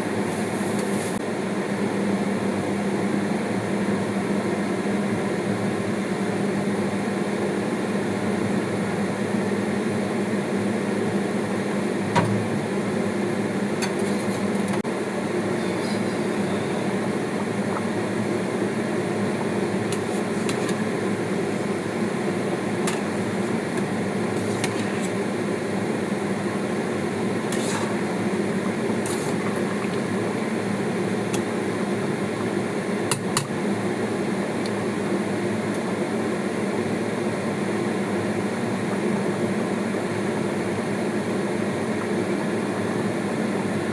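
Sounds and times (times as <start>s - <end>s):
appliance motor humming: 13.3s - 34.8s.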